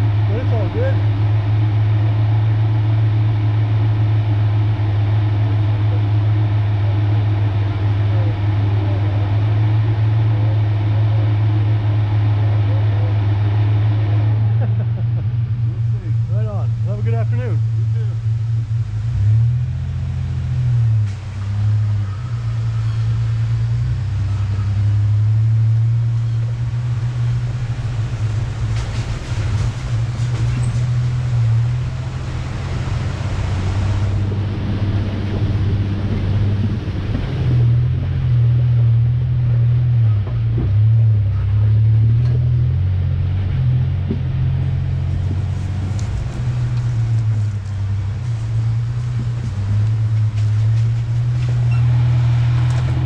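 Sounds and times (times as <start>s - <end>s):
pickup truck engine droning: 0.0s - 53.0s.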